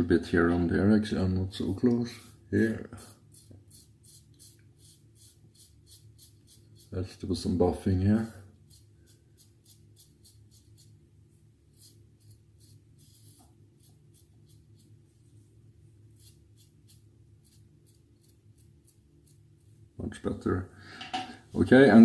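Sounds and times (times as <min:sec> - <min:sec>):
razor scraping stubble: 0:02.2 - 0:07.2, 0:08.6 - 0:11.0, 0:11.7 - 0:15.0, 0:16.1 - 0:19.8.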